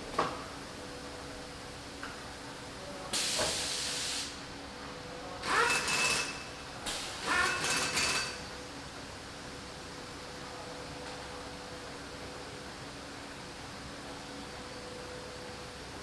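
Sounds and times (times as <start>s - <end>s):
air release hiss: 3.2s - 4.4s
machine whirring bursts: 5.4s - 8.4s.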